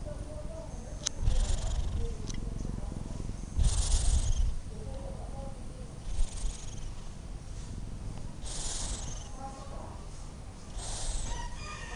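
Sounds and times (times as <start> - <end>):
cat purring: 1.0 - 4.9, 5.9 - 9.6, 10.7 - 11.6.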